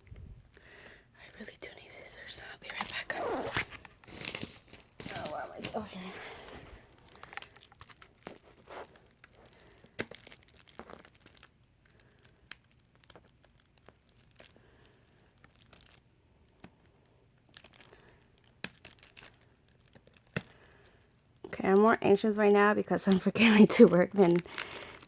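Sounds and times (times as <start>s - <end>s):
packaging tearing and crinkling: 2.4s - 21.1s, 23.8s - 25.0s.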